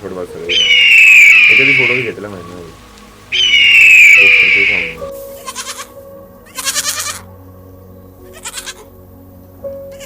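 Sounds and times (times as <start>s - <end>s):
soft background music: 0.0s - 10.0s
animal crying: 0.5s - 2.2s, 3.3s - 5.7s.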